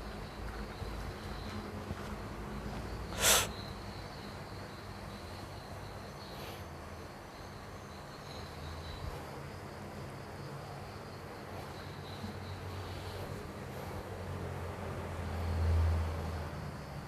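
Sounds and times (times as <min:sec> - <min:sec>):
high insect chirring: 0:00.0 - 0:17.0
sharp burst of breath: 0:03.2 - 0:03.6.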